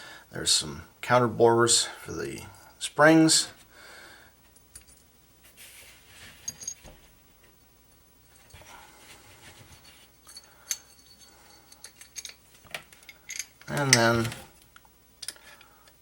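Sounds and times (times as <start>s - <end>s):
metallic clinks and taps: 4.6s - 5.0s, 6.5s - 7.0s, 9.7s - 14.4s.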